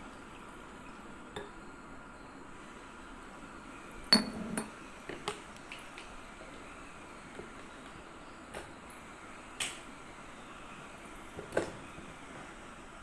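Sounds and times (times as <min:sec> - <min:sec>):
glassware and dishes clinking: 0:04.1 - 0:04.8.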